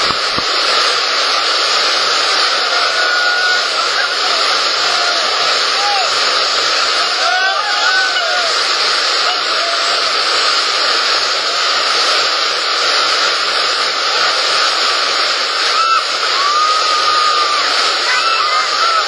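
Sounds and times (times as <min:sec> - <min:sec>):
river rapids rushing: 0:00.0 - 0:19.0
faint shouting voices: 0:02.4 - 0:10.2, 0:15.6 - 0:19.0.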